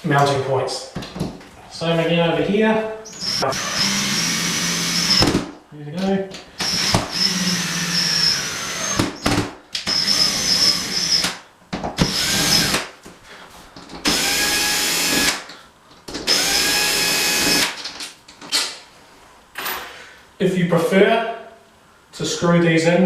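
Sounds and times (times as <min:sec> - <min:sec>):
cordless drill driving screws: 0:03.1 - 0:05.3, 0:06.6 - 0:11.4, 0:12.0 - 0:12.8, 0:14.1 - 0:15.4, 0:16.3 - 0:17.8.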